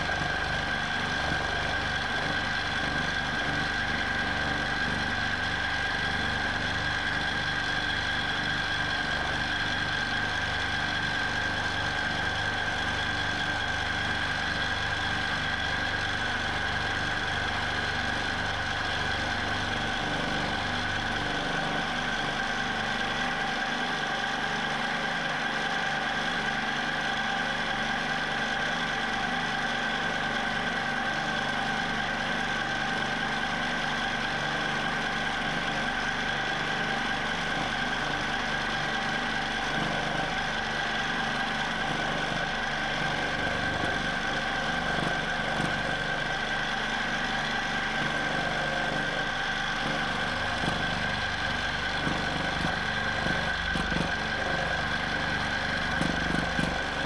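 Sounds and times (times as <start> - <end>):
quilting machine stitching: 47.8 - 57.0.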